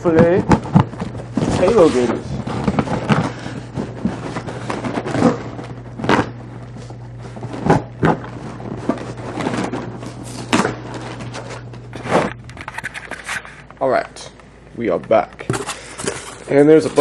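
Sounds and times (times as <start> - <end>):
cardboard scraping and rustling: 0.0 - 13.6, 15.5 - 17.0.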